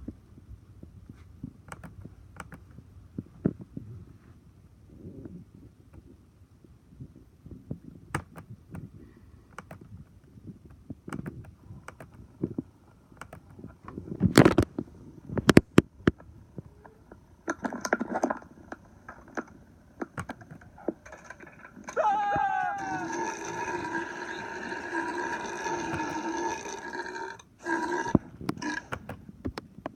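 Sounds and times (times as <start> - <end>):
scattered clicks and knocks: 19.1 - 21.7
person belching: 21.9 - 29.0.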